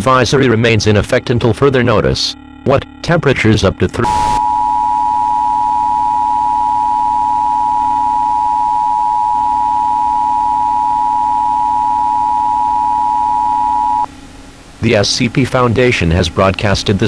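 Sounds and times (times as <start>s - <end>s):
two-tone alert signal: 4.0s - 14.1s
low steady hum: 4.0s - 17.0s.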